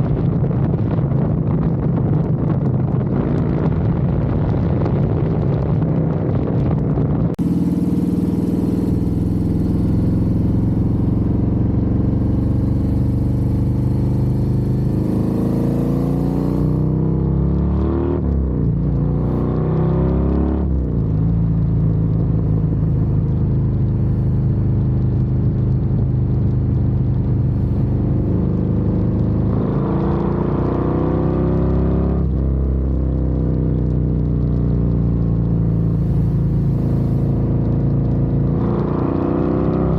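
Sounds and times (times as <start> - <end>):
motorcycle engine cruising: 0.0 - 39.9.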